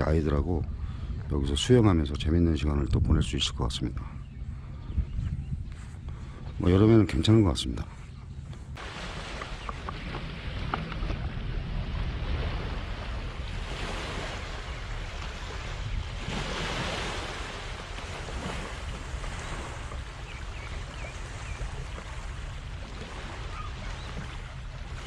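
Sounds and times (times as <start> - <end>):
wind rumbling on microphone: 0.0 - 25.0
sea waves washing ashore: 6.2 - 25.0.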